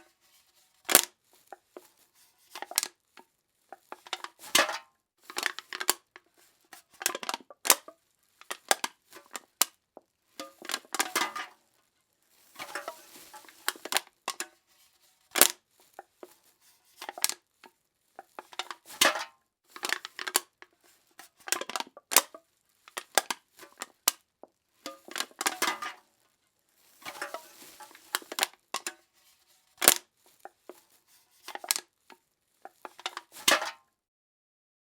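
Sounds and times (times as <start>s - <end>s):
aluminum cans being crushed: 2.6s - 2.9s, 3.7s - 9.7s, 10.4s - 11.6s, 12.6s - 14.6s, 15.4s - 16.1s, 17.0s - 17.4s, 18.2s - 24.2s, 24.8s - 26.1s, 26.9s - 29.0s, 29.8s - 30.8s, 31.5s - 31.9s, 32.6s - 33.8s.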